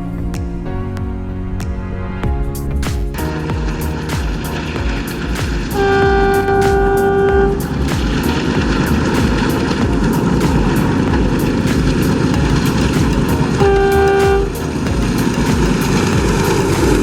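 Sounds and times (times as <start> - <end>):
passing train rumble: 3.2 - 17.0
wheels clattering on rails: 3.2 - 17.0
diesel locomotive horn blast: 5.8 - 7.6, 13.6 - 14.6.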